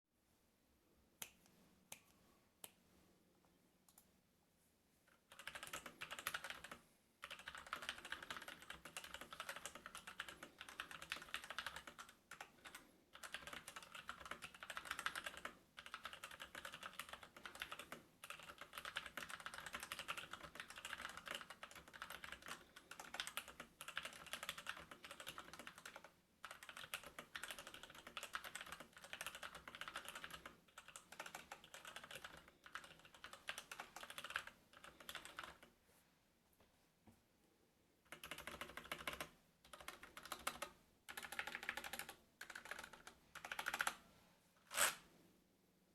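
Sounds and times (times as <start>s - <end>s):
mechanical keyboard typing: 5.2s - 35.7s, 38.1s - 44.0s.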